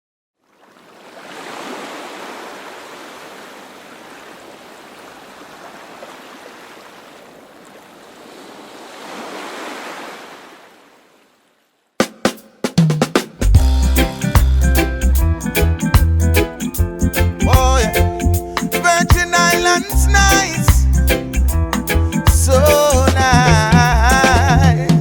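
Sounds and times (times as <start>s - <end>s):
ocean waves washing in: 0.4s - 11.4s
percussive music hits: 12.0s - 17.9s.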